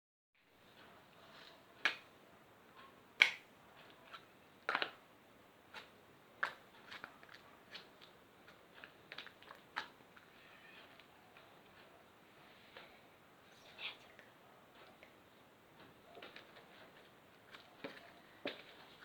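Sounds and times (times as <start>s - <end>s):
slime clicking and popping: 3.2s - 3.4s.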